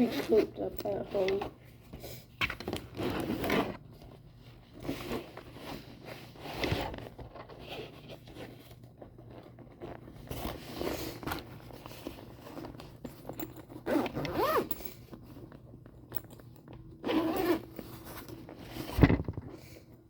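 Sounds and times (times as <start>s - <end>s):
zipper being pulled: 0.0s - 0.6s, 2.9s - 3.9s, 13.8s - 14.9s, 17.0s - 19.3s
fabric rustling and scraping: 0.0s - 15.6s, 17.0s - 19.9s.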